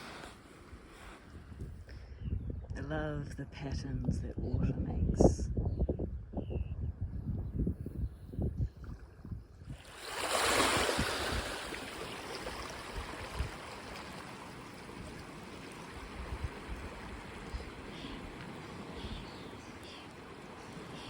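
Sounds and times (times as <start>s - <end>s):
water hissing over beach: 0.0s - 1.2s, 9.9s - 21.0s
small wave washing onto sand: 9.8s - 21.0s.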